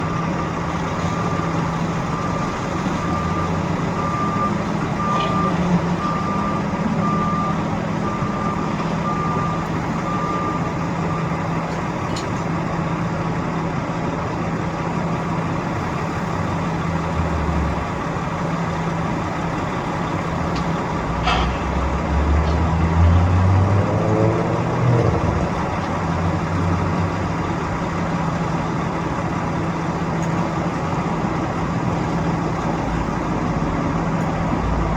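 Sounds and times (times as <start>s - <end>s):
reversing alarm beeping: 0.0s - 11.7s
diesel engine running: 0.0s - 34.9s.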